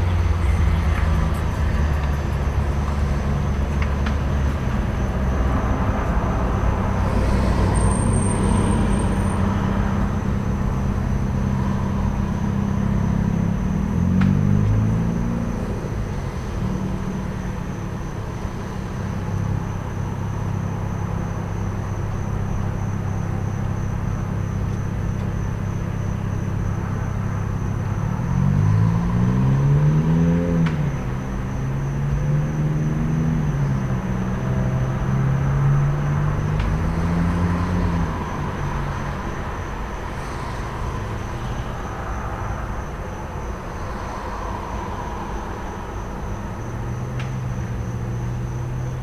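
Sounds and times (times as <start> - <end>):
truck engines idling: 0.0 - 28.1
crickets chirping: 0.0 - 49.0
vehicle pulling away: 0.0 - 49.0.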